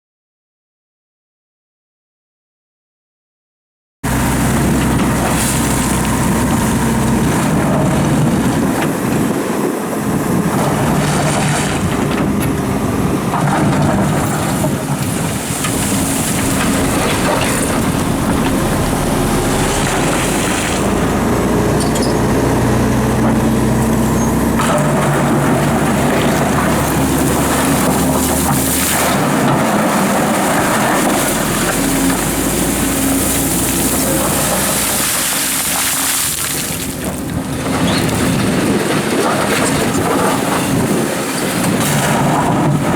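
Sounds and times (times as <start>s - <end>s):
excavator diesel engine under load: 4.0s - 42.9s
rushing gravel and water: 4.0s - 42.9s.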